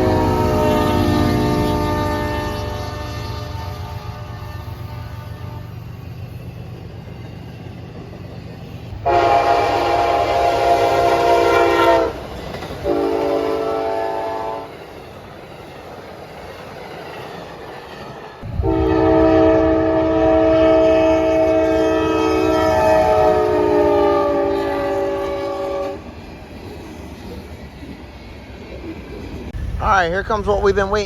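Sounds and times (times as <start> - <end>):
locomotive air horn blasts: 0.0 - 5.9, 9.0 - 12.2, 12.8 - 14.7, 18.5 - 26.0
train rumble: 0.0 - 31.0.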